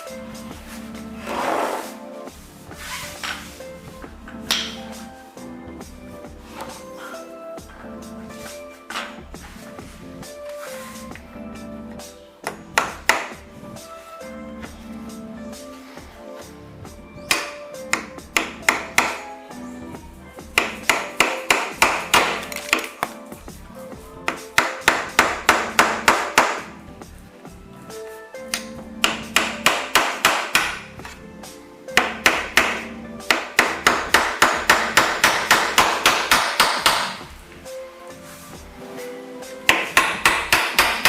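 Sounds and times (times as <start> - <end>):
hammer driving nails: 4.4 - 4.9, 12.4 - 13.4, 17.2 - 19.3, 20.5 - 23.2, 24.3 - 26.7, 28.5 - 31.2, 31.9 - 37.3, 39.7 - 41.0.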